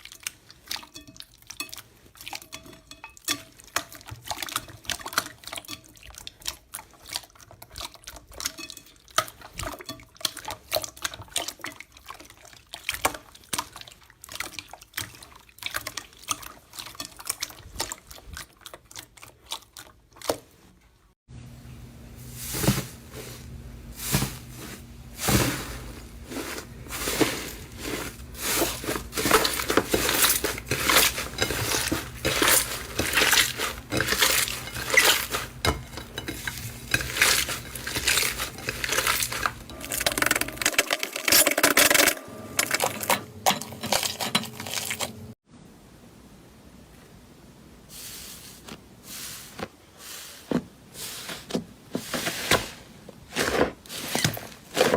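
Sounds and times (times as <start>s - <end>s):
slime squelching: 3.4s - 21.0s, 22.3s - 40.6s
low steady hum: 21.3s - 40.7s.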